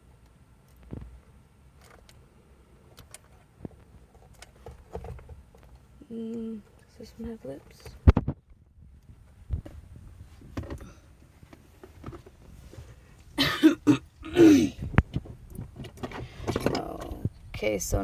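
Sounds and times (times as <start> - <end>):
person coughing: 13.4 - 14.8.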